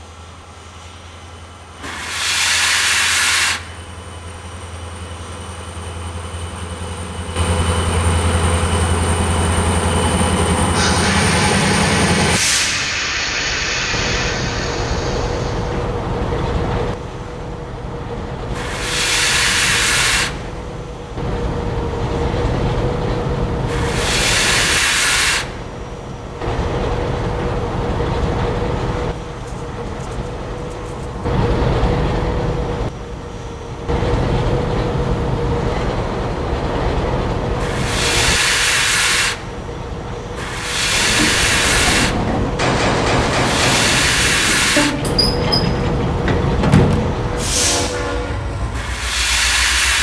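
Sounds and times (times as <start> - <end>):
steam hissing: 1.8 - 3.8, 10.8 - 15.6, 18.6 - 20.4, 23.7 - 25.6, 37.6 - 39.5, 40.4 - 42.2, 43.5 - 45.0, 48.7 - 50.0
locomotive engine rumble: 25.5 - 50.0.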